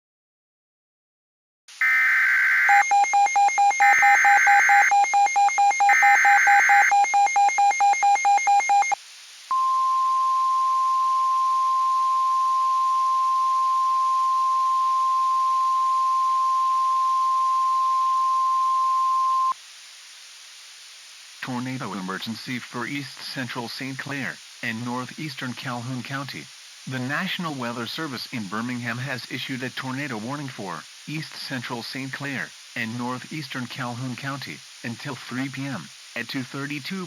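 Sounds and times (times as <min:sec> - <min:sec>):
steady alarm tone: 0:01.8 - 0:19.5
warbling data tones: 0:01.8 - 0:19.5
rapid beeping: 0:02.6 - 0:09.0.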